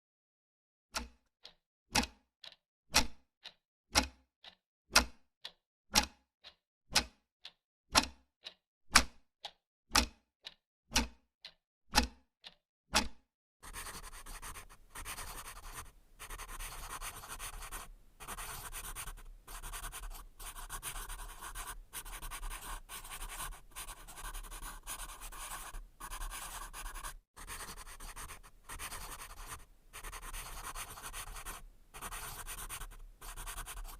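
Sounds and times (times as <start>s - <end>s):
pencil writing on paper: 13.6s - 33.9s
pencil tapping on paper: 13.7s - 33.9s.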